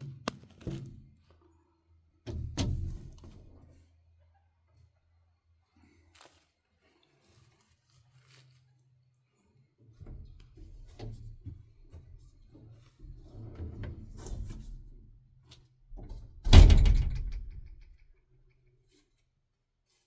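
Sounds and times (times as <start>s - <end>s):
handling noises and light knocks: 0.0s - 1.5s
door banging: 16.1s - 17.9s.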